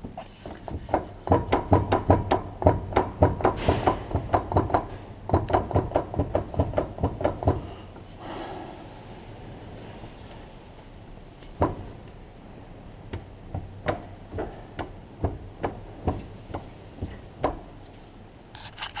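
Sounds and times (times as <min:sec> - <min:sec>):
sharp knocking from car driveline: 0:00.9 - 0:07.7.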